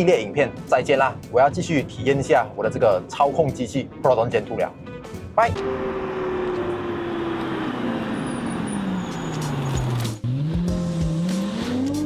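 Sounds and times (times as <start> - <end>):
car engine revving: 5.4 - 12.0.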